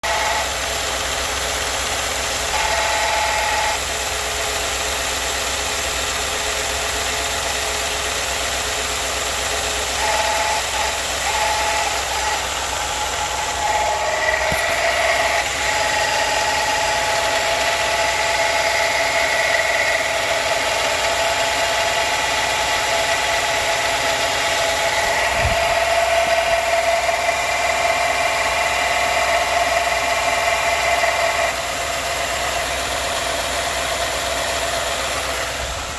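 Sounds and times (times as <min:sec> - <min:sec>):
truck engine running: 0:00.0 - 0:35.9
engine whine: 0:09.7 - 0:35.9.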